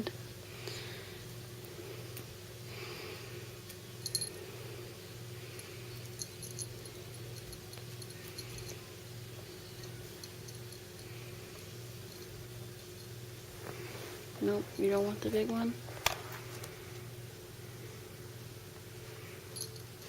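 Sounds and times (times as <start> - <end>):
steady low hum: 0.0 - 20.0
light tinkling rattles: 4.0 - 4.5, 5.4 - 13.2, 19.4 - 20.0.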